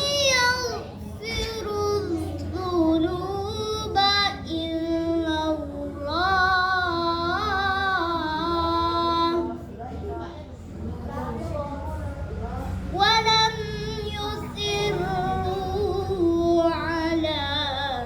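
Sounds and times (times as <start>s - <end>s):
girl chanting melodically: 12.9s - 18.0s.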